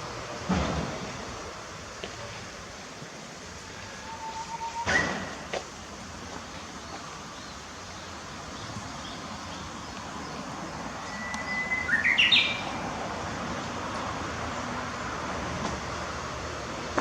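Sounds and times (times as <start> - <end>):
bush warbler singing: 6.6 - 13.6.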